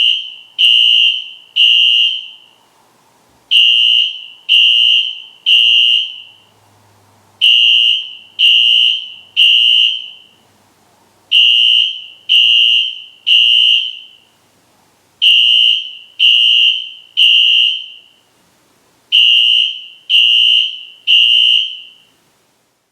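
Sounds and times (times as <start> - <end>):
fire alarm horn blasts: 0.0 - 2.6, 3.5 - 6.5, 7.4 - 10.4, 11.3 - 14.3, 15.2 - 18.2, 19.1 - 22.1.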